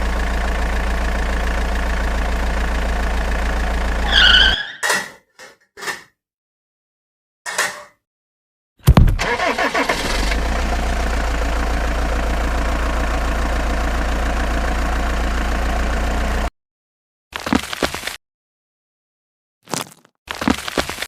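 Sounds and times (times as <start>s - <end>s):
engine cranking and idling: 0.0s - 4.5s, 8.9s - 16.5s.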